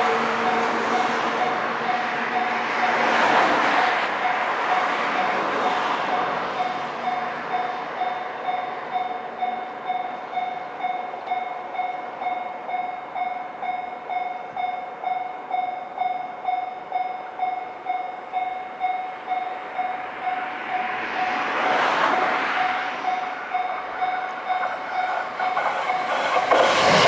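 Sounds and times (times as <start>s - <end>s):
level crossing warning bell ringing: 4.2s - 27.0s.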